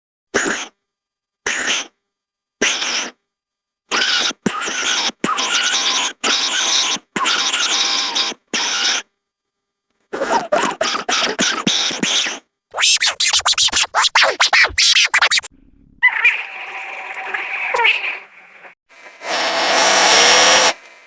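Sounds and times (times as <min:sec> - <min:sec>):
hissy scratchy bursts: 0:11.0 - 0:15.5
stutter of pitch-gliding sounds: 0:12.7 - 0:17.1.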